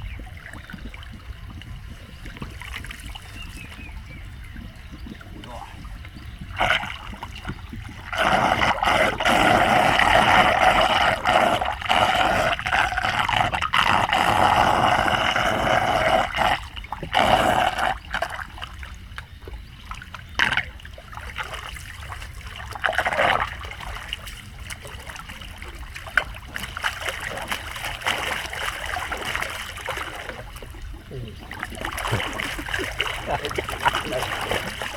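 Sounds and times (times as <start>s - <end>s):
water rushing into a drain: 0.0s - 19.0s, 20.3s - 34.9s
short splashes: 19.8s - 34.9s.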